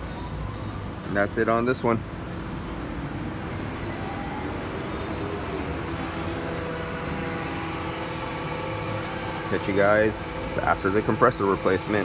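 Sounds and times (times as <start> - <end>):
electric compressor motor whining: 2.0 - 12.0.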